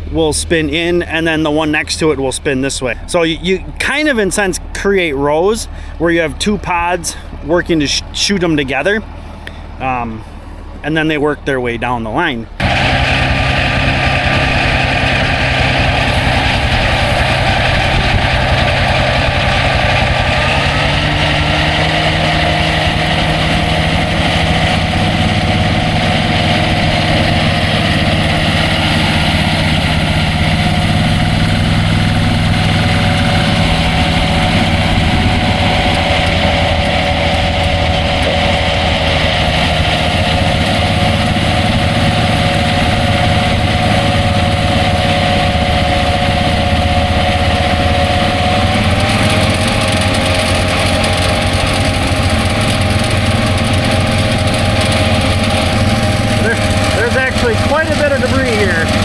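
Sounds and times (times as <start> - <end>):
tractor engine running: 0.0 - 59.0
mower discs whirring: 12.5 - 59.0.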